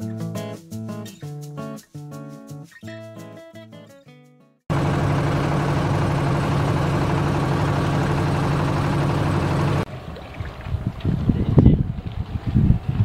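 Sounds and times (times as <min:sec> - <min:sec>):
boat engine humming: 0:04.7 - 0:11.0
wind noise: 0:09.9 - 0:13.0.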